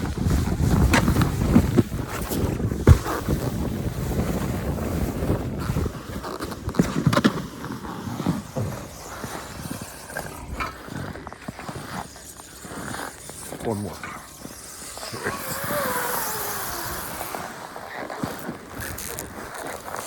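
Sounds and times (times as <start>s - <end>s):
wind buffeting microphone: 0.0s - 7.0s
sharp scrapes: 6.4s - 20.0s.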